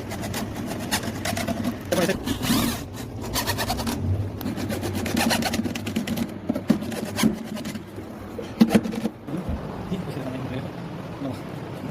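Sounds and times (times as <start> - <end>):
scraping wood by hand: 0.0 - 9.2.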